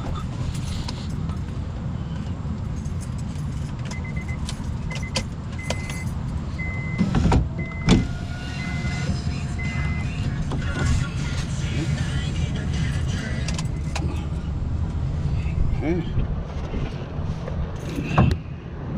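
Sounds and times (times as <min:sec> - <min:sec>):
car engine rumbling: 0:00.0 - 0:18.9
electronic warning chime beeping: 0:07.6 - 0:10.3.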